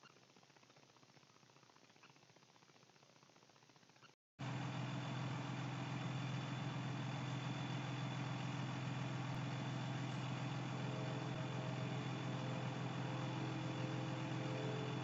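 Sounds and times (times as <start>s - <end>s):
low mechanical hum: 3.1s - 15.0s.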